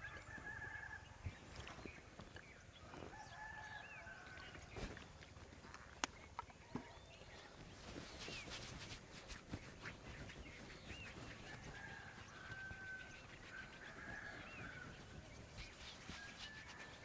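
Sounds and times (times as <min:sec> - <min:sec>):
faint bird calls: 0:05.7 - 0:17.0
rustling: 0:07.5 - 0:17.0.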